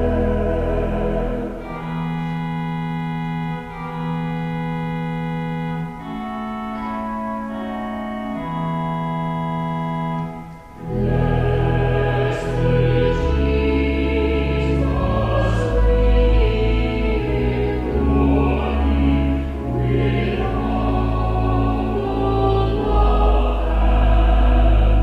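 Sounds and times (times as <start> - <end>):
vocal quartet singing: 0.0 - 2.5, 10.7 - 25.0
organ chords: 0.0 - 25.0.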